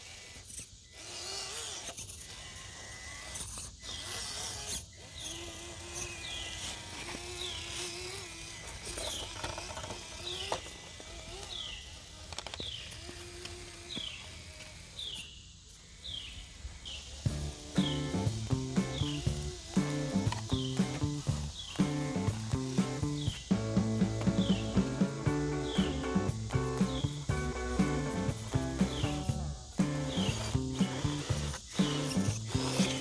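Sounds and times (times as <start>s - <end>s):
small electric motor whining: 0.0s - 33.0s
high downward chirp: 17.2s - 33.0s.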